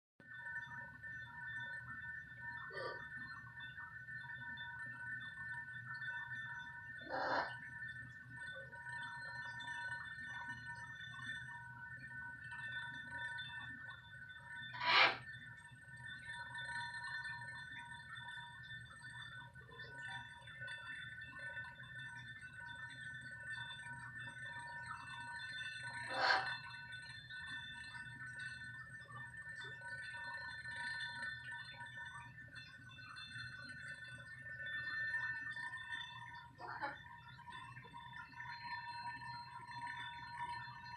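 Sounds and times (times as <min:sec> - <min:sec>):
crystal glasses ringing: 0:00.3 - 0:40.9.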